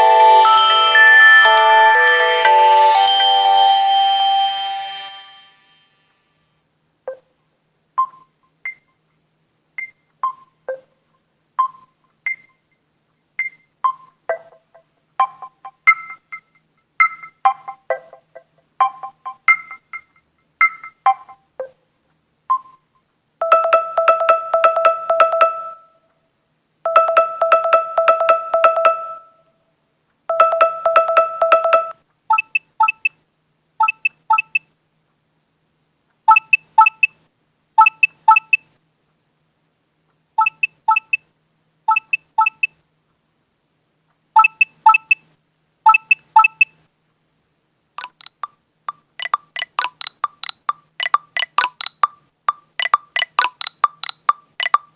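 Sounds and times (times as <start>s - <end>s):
fast repeating electronic alarm tone: 49.2s - 52.1s.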